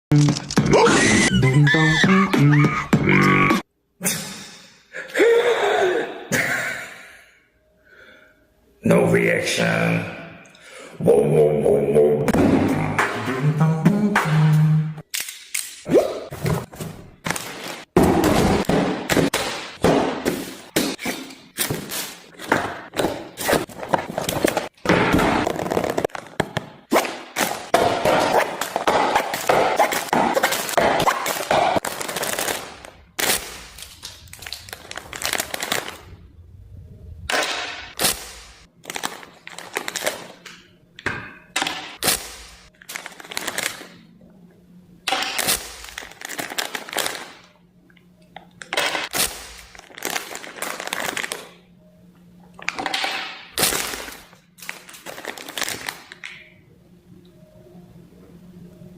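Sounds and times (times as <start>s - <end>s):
beatboxing: 11.2s - 15.0s.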